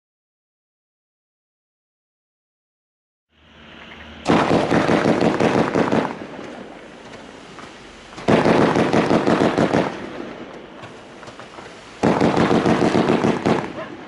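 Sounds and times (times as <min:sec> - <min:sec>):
faint firework crackle and hiss: 0:03.5 - 0:14.0
firework battery popping and crackling: 0:04.2 - 0:14.0.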